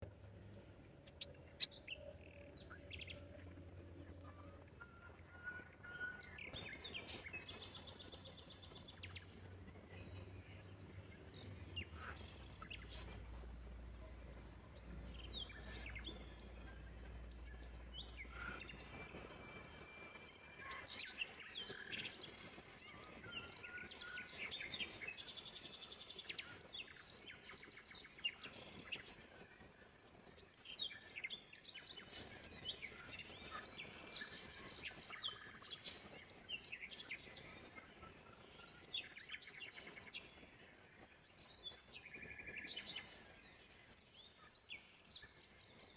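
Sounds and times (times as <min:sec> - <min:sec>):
birds chirping and trilling: 0:00.0 - 0:45.9.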